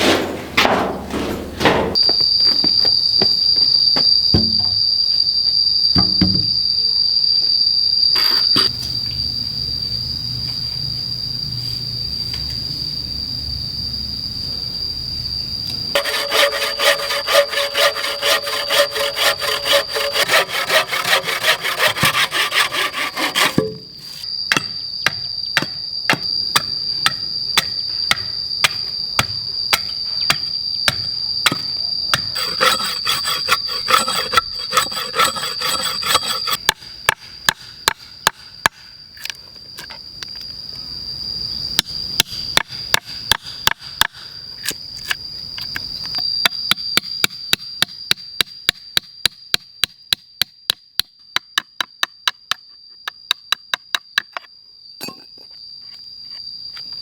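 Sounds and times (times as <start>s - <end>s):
sharp knocks on wood: 4.4s - 4.8s, 6.0s - 6.5s
hand saw cutting wood: 16.0s - 23.8s, 32.2s - 36.6s.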